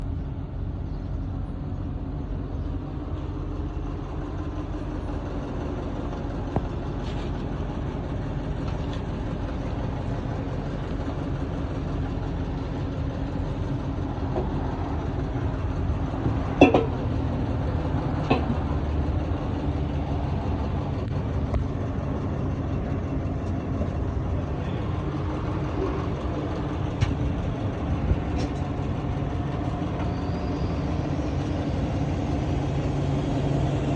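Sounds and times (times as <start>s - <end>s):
truck engine rumbling: 0.0s - 33.9s
sharp knocks or clanks: 16.6s - 17.1s, 18.2s - 18.6s.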